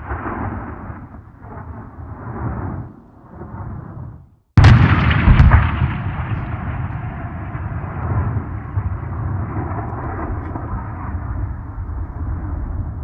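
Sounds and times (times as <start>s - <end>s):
deep explosion rumble: 0.0s - 13.0s.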